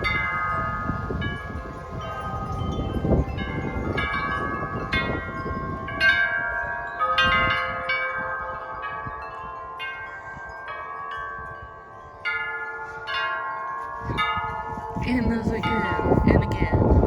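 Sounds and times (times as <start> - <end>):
wind chimes ringing: 0.0 - 17.0
wind rumbling on microphone: 0.0 - 17.0.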